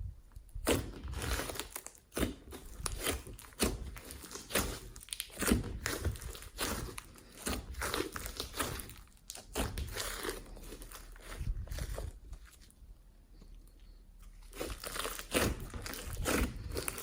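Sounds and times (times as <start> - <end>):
hands squishing slime: 0.5 - 17.0.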